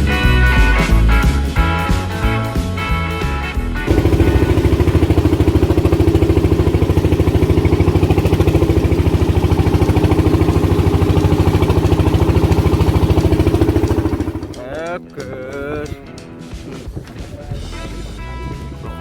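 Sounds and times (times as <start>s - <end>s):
small engine running: 3.9s - 14.9s.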